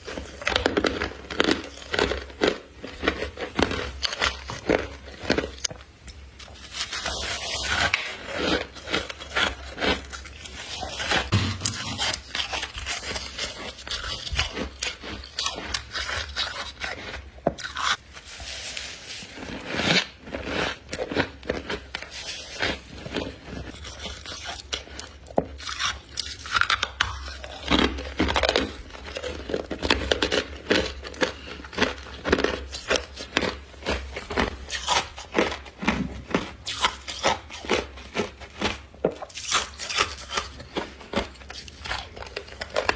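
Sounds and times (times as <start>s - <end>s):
ice crystals crunching while chewed: 0.0s - 5.8s, 6.4s - 42.9s.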